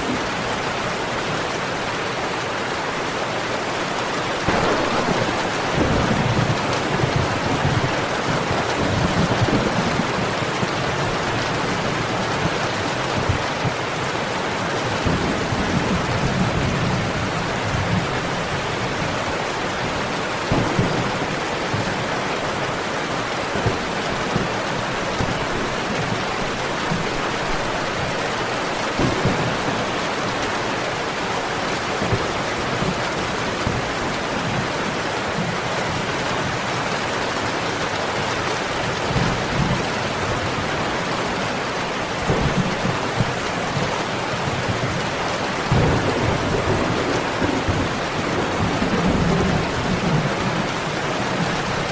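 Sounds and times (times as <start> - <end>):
heavy rain: 0.0 - 51.9
low rumbles of thunder: 4.5 - 11.6, 45.7 - 50.9.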